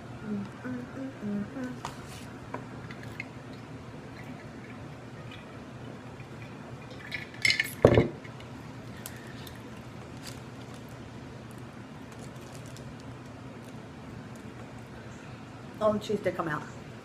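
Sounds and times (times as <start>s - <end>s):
low background hum: 0.0s - 17.0s
tableware clattering: 6.9s - 8.2s.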